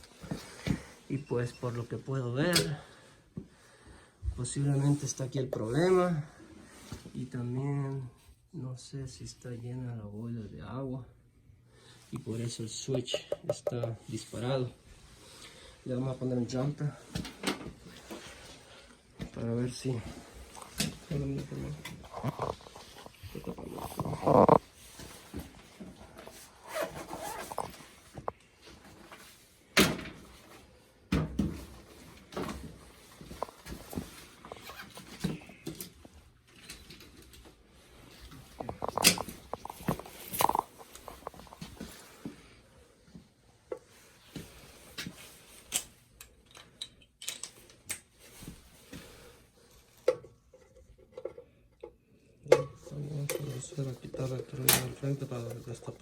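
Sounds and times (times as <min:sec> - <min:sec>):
scrapes and rustles of handling: 0:13.8 - 0:30.9, 0:31.5 - 0:56.0.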